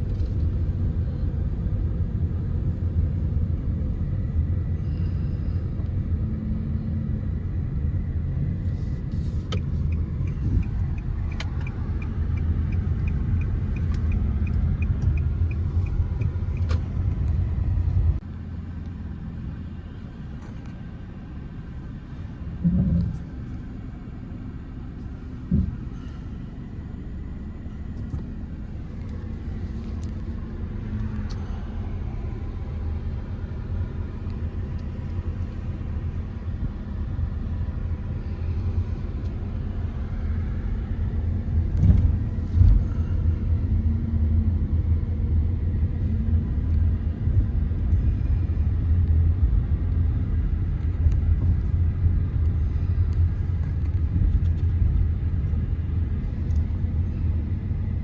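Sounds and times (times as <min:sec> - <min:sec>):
vehicle road and engine rumble: 0:00.0 - 0:58.0
vehicle bumps: 0:22.6 - 0:23.4, 0:25.4 - 0:26.3.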